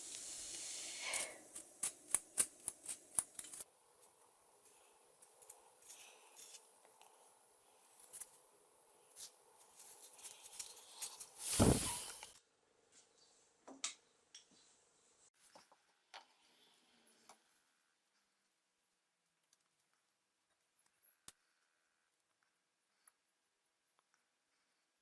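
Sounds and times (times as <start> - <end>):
handling clicks and scrapes: 1.2 - 4.2
brief rushing noise: 11.5 - 12.1.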